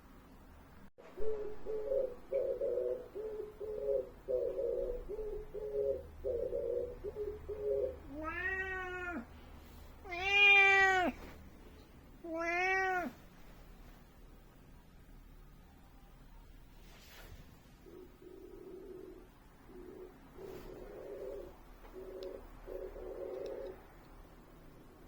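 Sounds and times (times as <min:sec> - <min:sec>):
cat low rhythmic calls: 0:06.9 - 0:09.4, 0:12.2 - 0:13.2
cat meowing loudly: 0:08.1 - 0:09.3, 0:10.0 - 0:11.2, 0:12.2 - 0:13.2.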